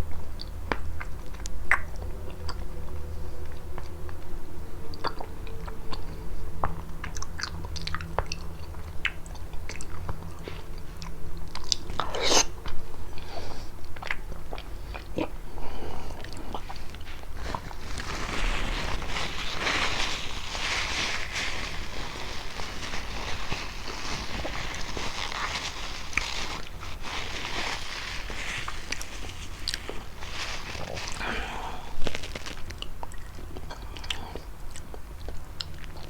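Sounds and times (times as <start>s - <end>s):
chewing prickly pear fruit: 0.2s - 36.0s
steady rustling: 15.8s - 32.8s
seeds crunching: 16.7s - 33.4s.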